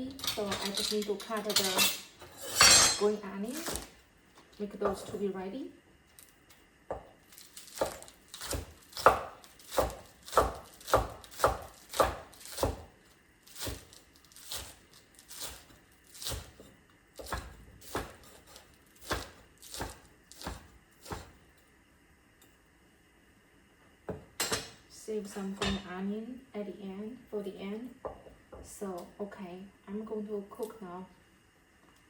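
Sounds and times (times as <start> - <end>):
knife chopping green onions: 3.5 - 3.9, 7.7 - 12.9, 13.5 - 21.4.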